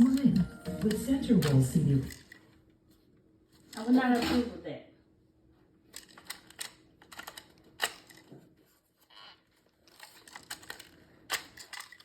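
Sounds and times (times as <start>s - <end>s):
plastic gun parts clicking: 5.9s - 8.3s, 9.8s - 12.0s.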